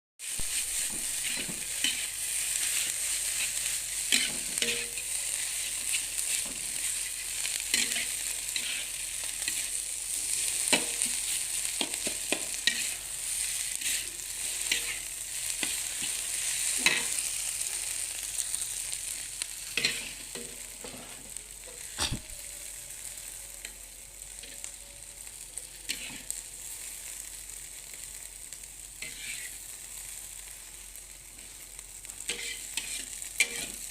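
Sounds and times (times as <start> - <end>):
food sizzling in oil: 0.2 - 33.9
utensil scraping pan: 29.0 - 29.6, 32.3 - 33.8.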